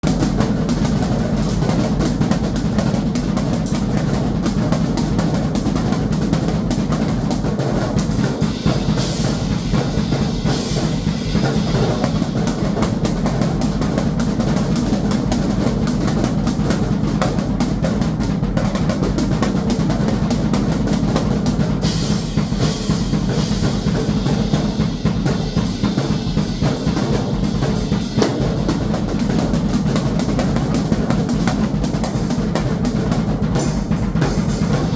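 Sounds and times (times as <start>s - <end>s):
fast drum kit playing: 0.0s - 34.9s
hissy cymbals: 8.0s - 14.5s, 21.5s - 30.5s, 33.6s - 34.9s.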